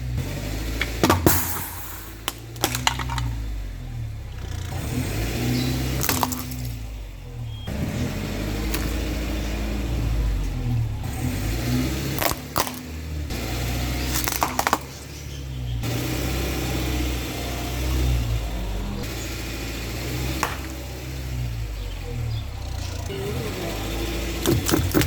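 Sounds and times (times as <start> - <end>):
car engine running low: 0.0 - 25.0
tyres crushing objects with pops: 0.7 - 3.6, 4.4 - 7.6, 8.6 - 9.8, 11.2 - 16.1, 19.9 - 21.5, 24.2 - 25.0.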